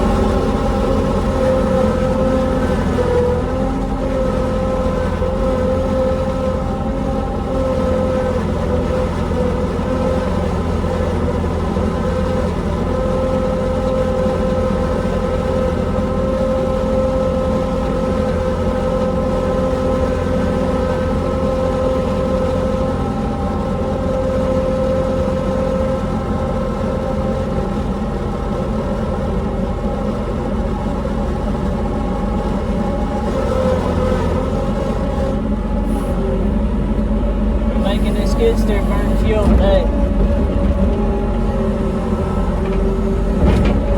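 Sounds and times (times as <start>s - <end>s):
diesel engine running: 0.0s - 43.9s
steady high tone: 37.8s - 40.0s.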